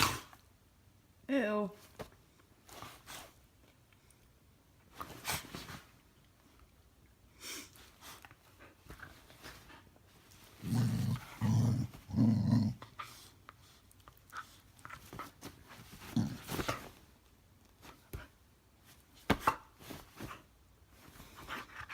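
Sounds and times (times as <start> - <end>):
dog grumbling: 10.6 - 12.9, 16.0 - 16.7.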